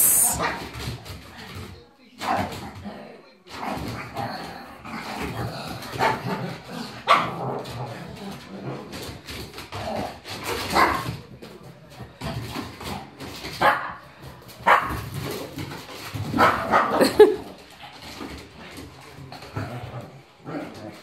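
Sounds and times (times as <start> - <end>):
dog barking: 13.6 - 14.0, 14.6 - 15.0, 16.4 - 17.0.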